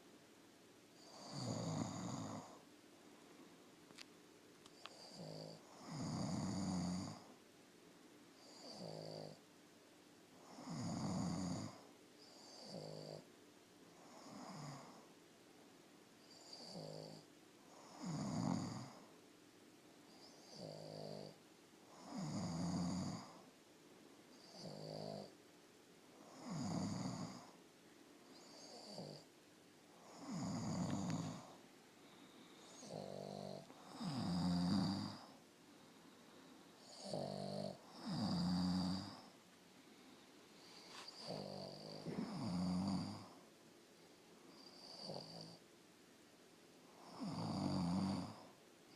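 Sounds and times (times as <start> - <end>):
person snoring: 1.0 - 2.6, 4.8 - 7.2, 8.4 - 9.4, 16.3 - 17.2, 22.0 - 23.4, 30.0 - 31.6, 32.6 - 35.4, 36.8 - 39.3, 40.7 - 43.4, 44.6 - 45.6, 47.0 - 48.5.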